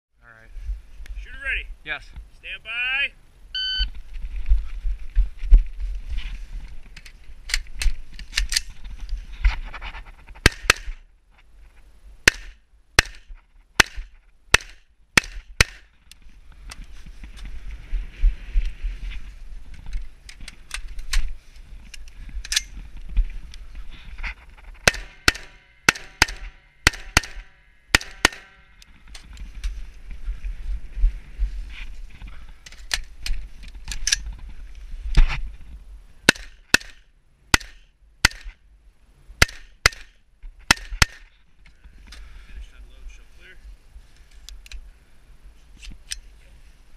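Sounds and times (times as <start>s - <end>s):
steady low rumble: 3.2s - 45.6s
brief ringing tone: 3.6s - 3.9s
rifle shots: 10.4s - 11.0s, 24.8s - 28.8s, 36.3s - 38.5s, 39.4s - 40.1s.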